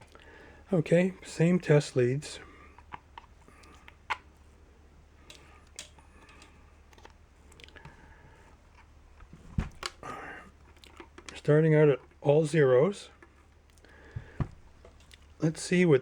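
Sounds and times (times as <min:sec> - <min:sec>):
faint steady low hum: 0:00.0 - 0:16.0
clicks and handling knocks: 0:05.2 - 0:11.4, 0:13.2 - 0:15.3.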